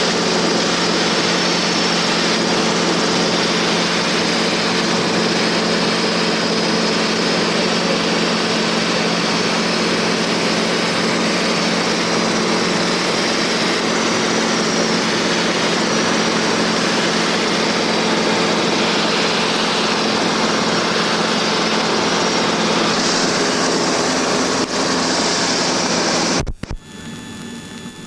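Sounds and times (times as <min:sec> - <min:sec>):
propeller plane engine drone: 0:00.0 - 0:28.0
microphone clicks: 0:26.4 - 0:26.9.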